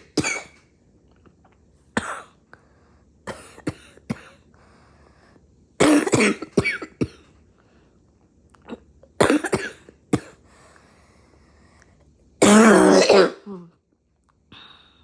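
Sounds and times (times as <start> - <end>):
person clearing throat: 0.0 - 0.6, 3.3 - 4.4, 5.8 - 7.2, 8.6 - 10.4, 12.4 - 13.6
person coughing: 0.0 - 0.6, 2.0 - 2.3, 3.3 - 4.4, 5.8 - 7.3, 8.7 - 10.4, 12.4 - 13.6.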